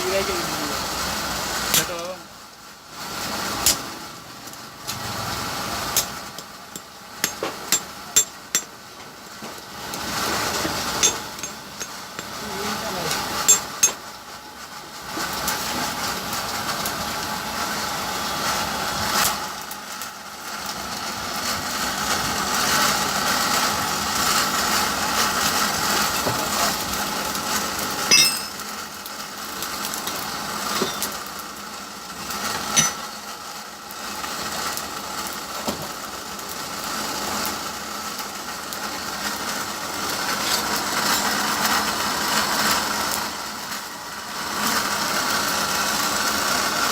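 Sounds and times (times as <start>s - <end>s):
machine running steadily: 0.0s - 46.9s
sharp metallic knocks: 28.1s - 28.6s.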